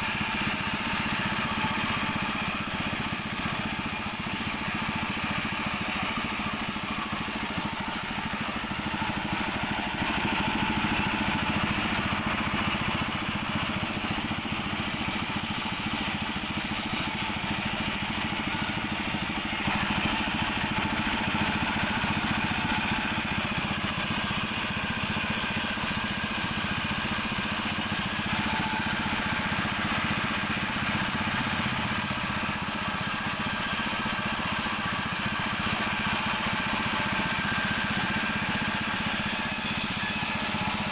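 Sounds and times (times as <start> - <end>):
sawmill machinery drone: 0.0 - 40.9.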